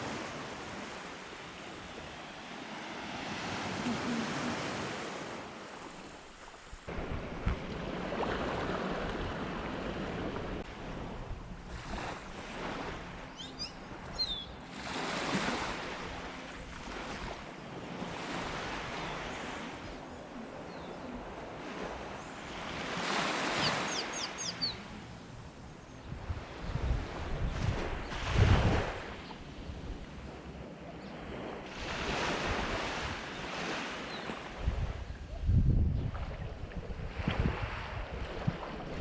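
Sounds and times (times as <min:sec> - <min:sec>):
wind blowing: 0:00.0 - 0:13.4, 0:24.6 - 0:30.0, 0:34.5 - 0:39.0
sea waves washing: 0:00.0 - 0:30.7.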